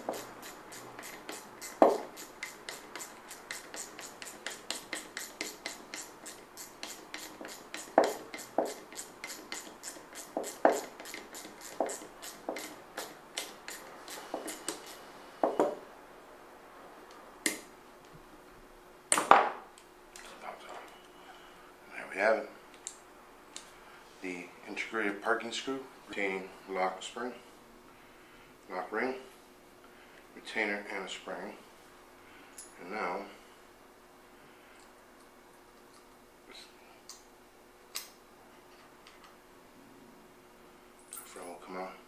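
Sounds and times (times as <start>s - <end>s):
metal parts knocking: 0.0s - 14.9s
even metallic clicking: 0.0s - 15.0s.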